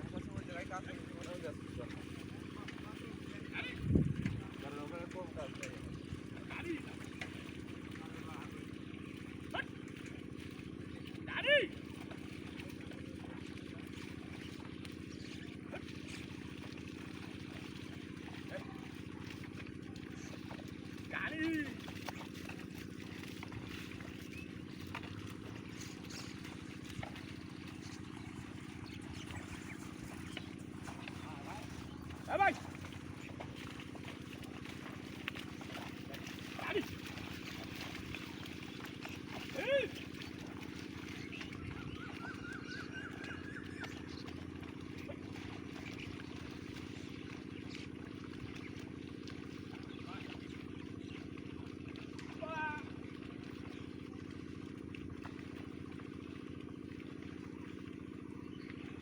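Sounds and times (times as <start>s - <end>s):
engine running: 0.0s - 59.0s
birds chirping: 0.1s - 54.1s, 56.7s - 59.0s
bird chirping: 25.6s - 33.5s.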